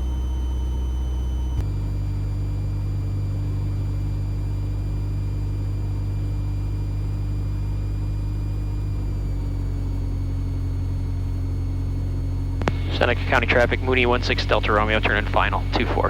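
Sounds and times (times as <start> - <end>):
aircraft engine and propeller droning: 0.0 - 16.0
small click: 12.6 - 12.9.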